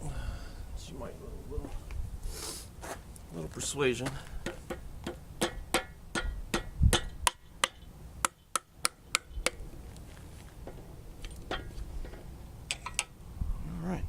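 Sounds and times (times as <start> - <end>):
hammer striking metal engine block: 4.5 - 9.6.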